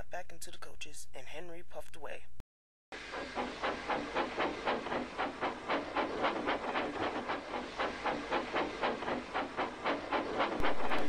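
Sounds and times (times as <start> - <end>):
steam hissing: 3.0 - 11.0
steam locomotive chuffing: 3.0 - 11.0.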